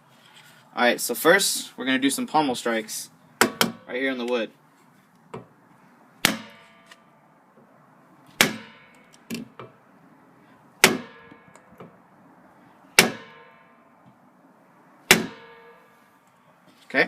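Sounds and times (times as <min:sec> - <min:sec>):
knife pommel striking wood: 0:06.2 - 0:07.0, 0:08.4 - 0:09.5, 0:10.8 - 0:11.6, 0:13.0 - 0:13.5, 0:15.1 - 0:15.8.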